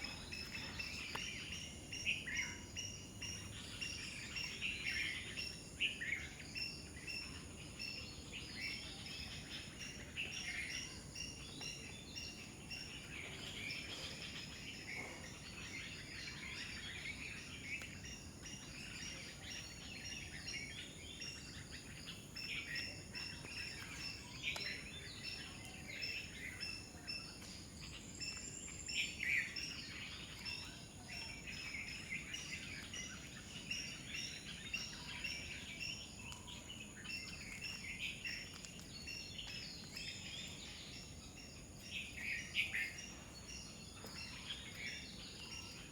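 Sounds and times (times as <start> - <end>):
birds chirping in chorus: 0.0 - 45.9.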